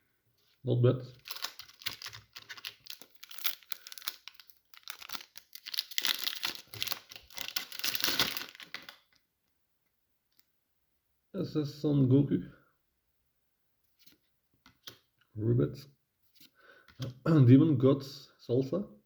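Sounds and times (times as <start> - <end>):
wrapper being torn and crinkled: 1.1 - 9.2.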